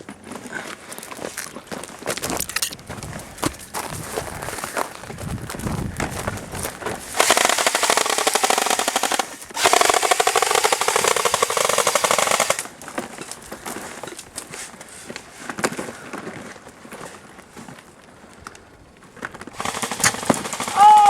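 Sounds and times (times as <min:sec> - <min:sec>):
airsoft gun rapid shots: 0:07.1 - 0:12.7, 0:19.6 - 0:21.0.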